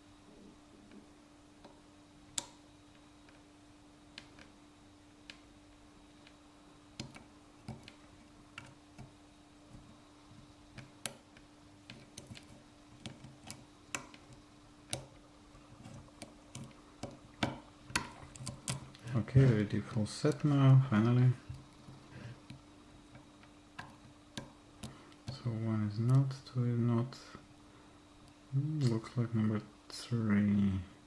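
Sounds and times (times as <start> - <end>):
faint steady hum: 0.0 - 31.0.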